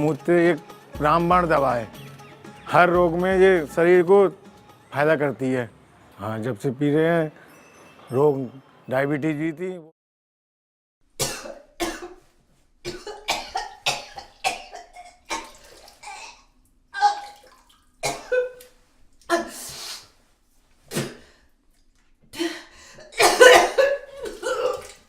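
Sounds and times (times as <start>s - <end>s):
person coughing: 11.2s - 12.2s, 12.9s - 16.4s, 18.0s - 18.6s, 23.0s - 25.0s.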